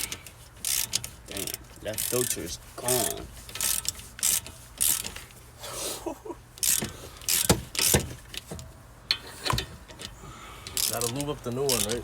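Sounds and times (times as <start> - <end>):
hand tools knocking and rattling: 6.6 - 12.0.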